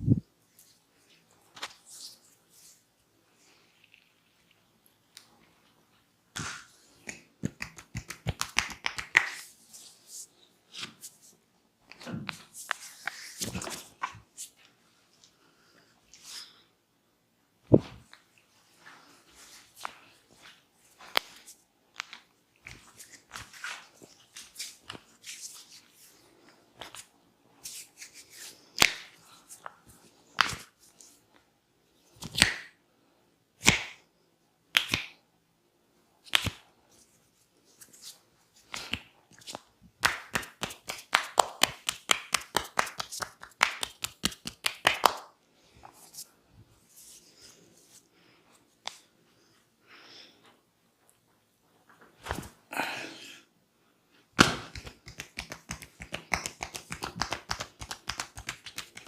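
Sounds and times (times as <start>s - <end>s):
hands slapping on skin: 6.3s - 9.5s, 28.8s - 29.8s, 30.4s - 30.7s, 32.2s - 32.8s, 33.6s - 34.0s, 34.7s - 35.2s, 36.3s - 36.6s, 38.7s - 45.4s, 54.4s - 59.0s.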